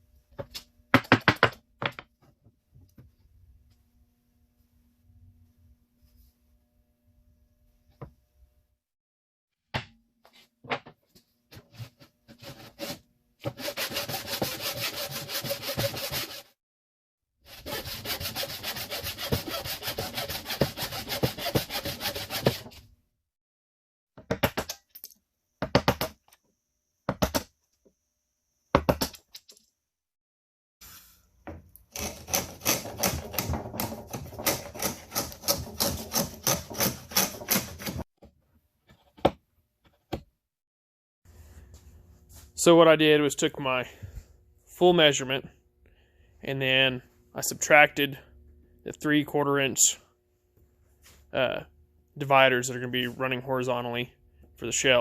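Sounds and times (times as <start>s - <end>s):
hand saw cutting wood: 12.3s - 16.6s, 17.5s - 22.8s, 31.9s - 38.0s.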